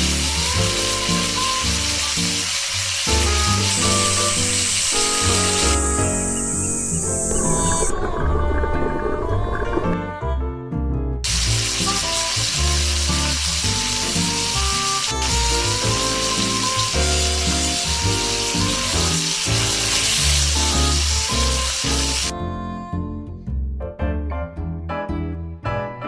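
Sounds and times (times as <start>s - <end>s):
food sizzling in frying: 0.0s - 7.9s, 11.2s - 22.3s
background music: 0.0s - 26.0s.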